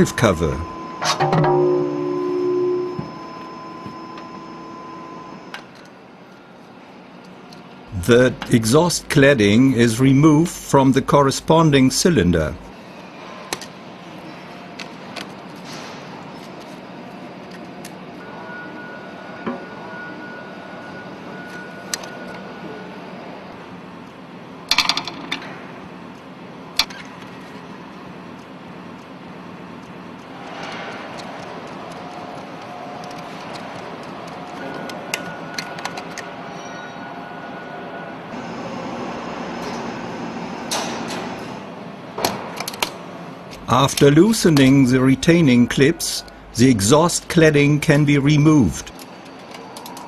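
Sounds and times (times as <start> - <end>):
thin steady whine: 0.0 - 13.3, 31.2 - 42.0, 43.2 - 49.6
machinery hum: 0.0 - 50.0.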